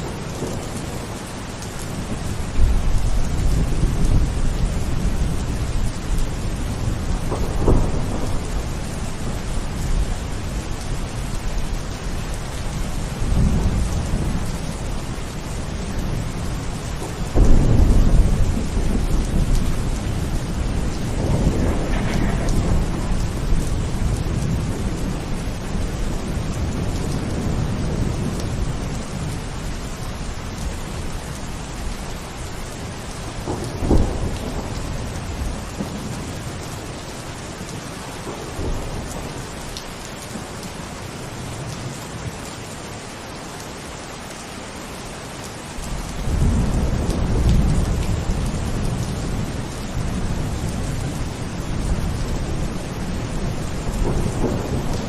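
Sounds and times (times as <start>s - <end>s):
steady rain: 0.0s - 55.0s
rolling thunder: 1.8s - 11.5s, 13.0s - 29.5s, 33.1s - 36.6s, 45.9s - 55.0s
thunder clap: 7.0s - 8.9s, 17.0s - 25.2s, 33.4s - 36.2s, 53.5s - 55.0s.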